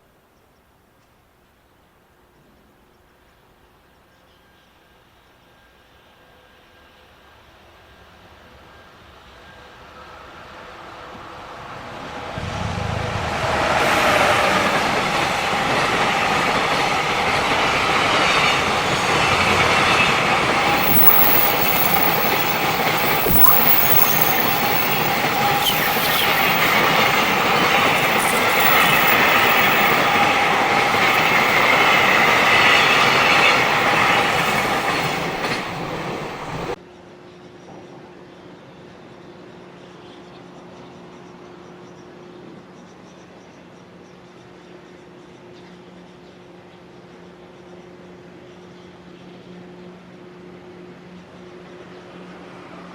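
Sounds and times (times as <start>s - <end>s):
freight train wheels on rails: 7.8s - 36.8s.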